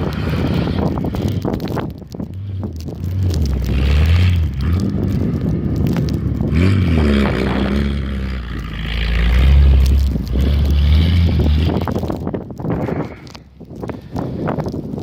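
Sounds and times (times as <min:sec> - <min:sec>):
car engine revving: 0:02.3 - 0:12.2
snow scraping under car: 0:03.1 - 0:12.4.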